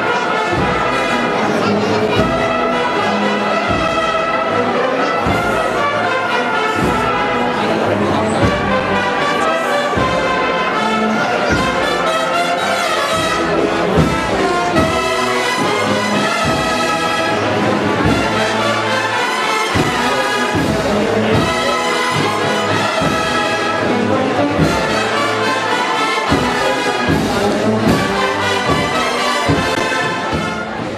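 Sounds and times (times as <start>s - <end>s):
brass band playing a march: 0.0s - 30.9s
steady drum beat: 11.5s - 30.9s.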